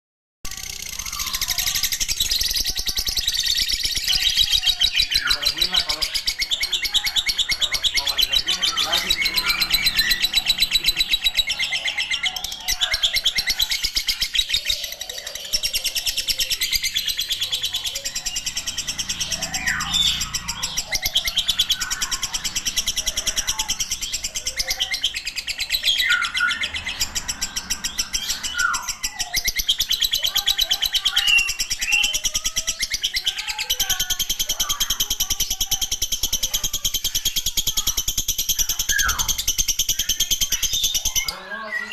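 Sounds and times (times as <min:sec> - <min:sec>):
bird chattering trill: 0:00.5 - 0:41.9.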